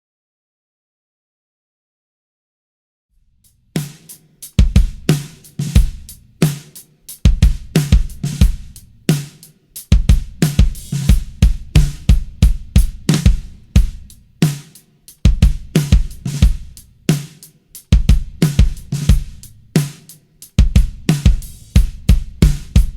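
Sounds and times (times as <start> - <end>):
drum kit playing a groove: 3.8 - 22.9
bass drum thumping: 4.6 - 6.2, 7.3 - 9.1, 9.9 - 14.3, 15.3 - 16.8, 17.9 - 19.8, 20.6 - 22.9.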